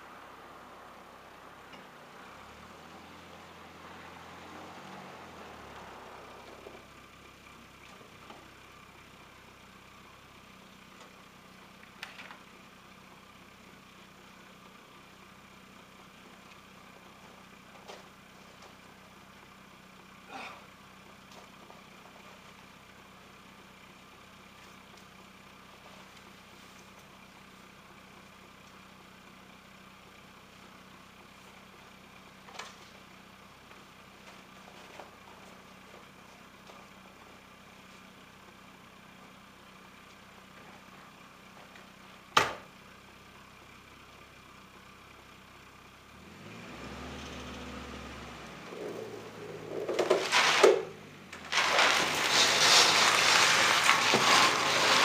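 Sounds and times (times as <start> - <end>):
engine idling: 0.0 - 46.6, 47.2 - 55.0.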